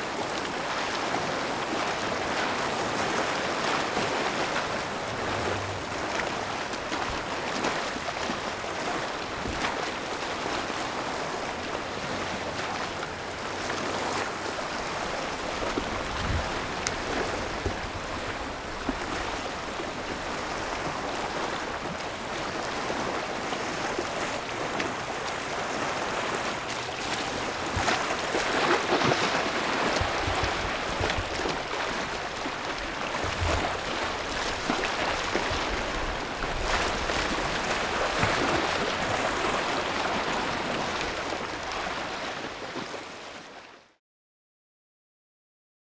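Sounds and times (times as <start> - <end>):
steady rushing noise: 4.8 - 6.6.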